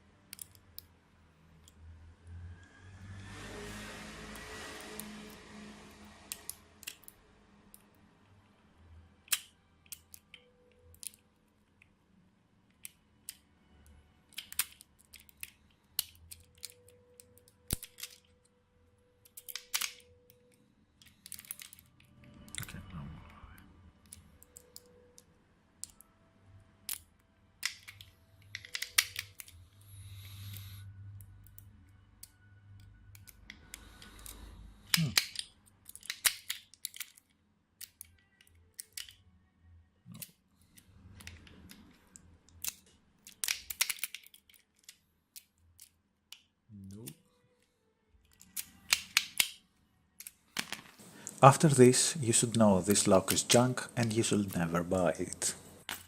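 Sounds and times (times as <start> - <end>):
lock bolt opening and closing: 0.3 - 0.8, 9.2 - 11.2, 14.3 - 18.4, 19.2 - 20.4, 21.0 - 22.7, 26.8 - 30.7, 33.1 - 39.2, 40.1 - 46.0, 48.2 - 49.6
lock pick clicking: 0.3 - 0.9, 9.3 - 11.2, 14.3 - 18.4, 19.2 - 22.7, 26.9 - 29.6, 32.2 - 39.2, 42.5 - 46.4, 48.3 - 49.6.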